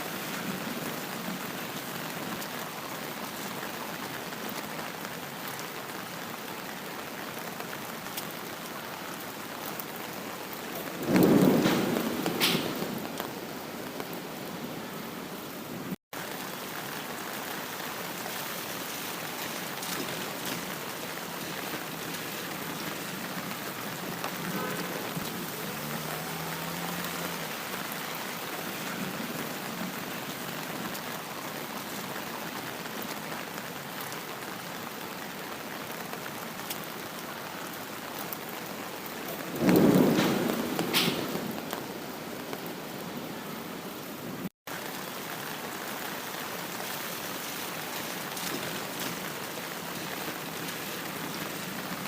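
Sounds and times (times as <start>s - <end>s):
steady rain: 0.0s - 52.0s
thunder rumbling: 10.5s - 14.6s, 39.2s - 43.3s.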